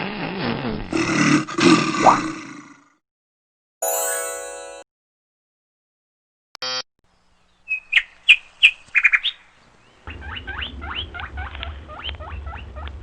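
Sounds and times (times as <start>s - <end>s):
bird chirping: 7.1s - 10.5s.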